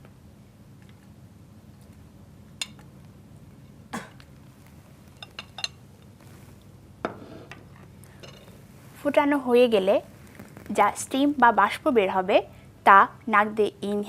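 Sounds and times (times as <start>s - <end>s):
metal utensils clinking on pot: 5.2s - 5.8s.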